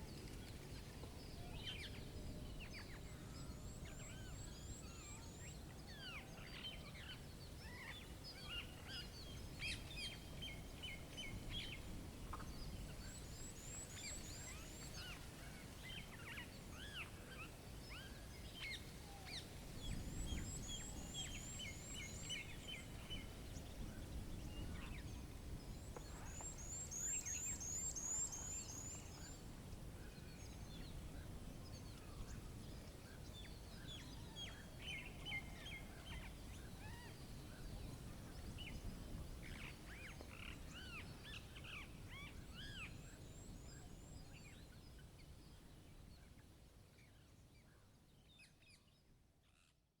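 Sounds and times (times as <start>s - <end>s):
songbirds chirping: 0.0s - 50.0s
low wind rumble: 19.1s - 27.4s.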